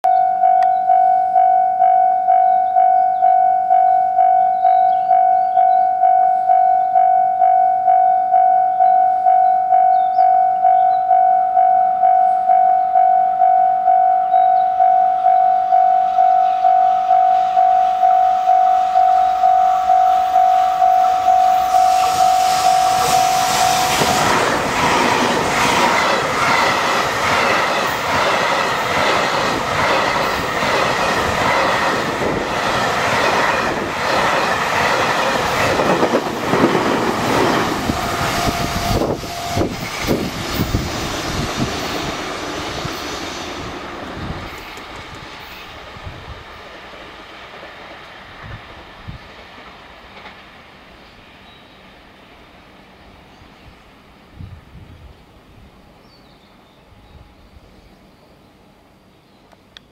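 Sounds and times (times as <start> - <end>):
level-crossing alarm bell ringing: 0.0 - 24.7
freight train passing: 0.0 - 59.9
train wheels clattering: 20.3 - 45.7.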